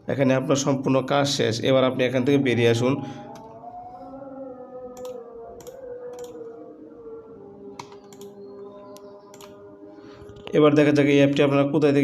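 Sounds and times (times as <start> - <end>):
quiet background music: 0.0 - 12.0
sharp short clicks: 9.3 - 9.6.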